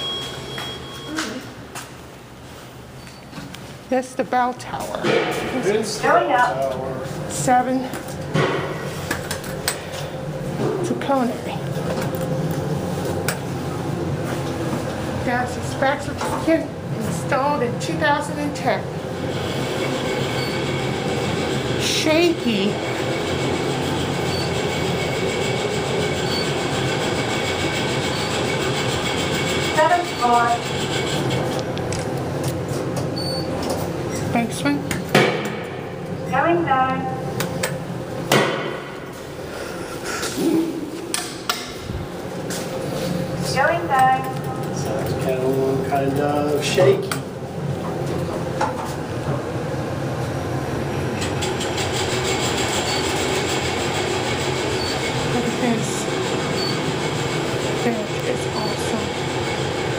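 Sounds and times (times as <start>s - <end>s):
elevator car rumbling and rattling: 6.7s - 38.3s, 41.8s - 59.9s.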